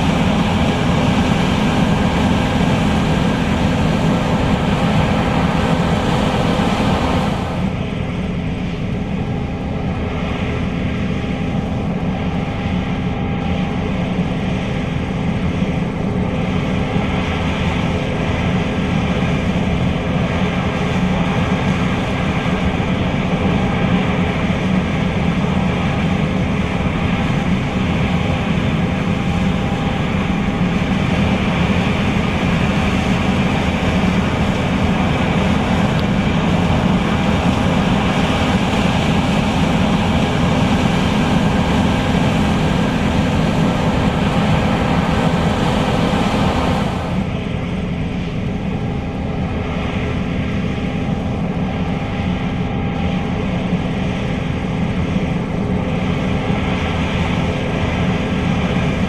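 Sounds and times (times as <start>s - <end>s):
combine harvester running: 0.0s - 58.6s.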